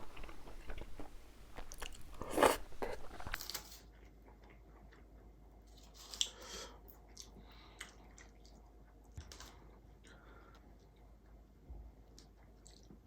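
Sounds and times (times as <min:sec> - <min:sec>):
mouth clicks and smacks: 0:00.0 - 0:03.4
person chewing: 0:00.0 - 0:03.6.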